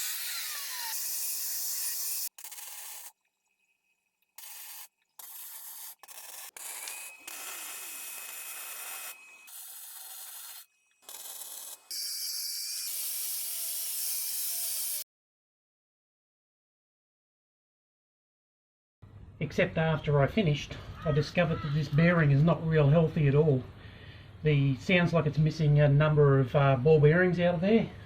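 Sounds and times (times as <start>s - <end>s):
harsh hissing and rasping: 0.0s - 3.1s, 4.4s - 15.0s.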